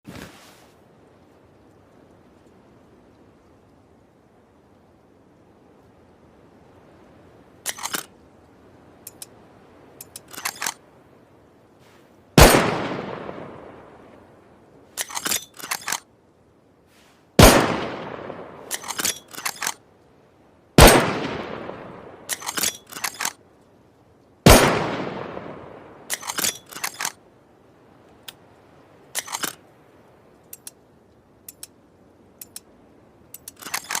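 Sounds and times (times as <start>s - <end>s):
rifle bolt metallic clicks: 7.6s - 8.1s, 10.0s - 10.8s, 15.0s - 16.0s, 18.7s - 19.8s, 22.3s - 23.4s, 26.1s - 27.2s, 29.1s - 29.6s, 30.4s - 30.8s, 31.4s - 31.8s, 32.4s - 34.0s
rifle shots: 12.4s - 13.4s, 17.4s - 19.7s, 20.8s - 23.3s, 24.5s - 27.1s.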